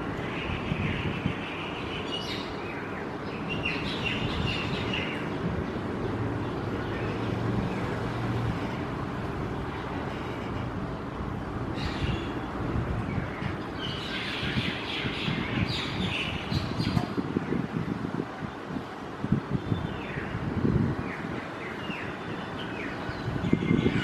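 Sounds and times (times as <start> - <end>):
birds chirping: 0.2 - 8.1, 11.7 - 17.6.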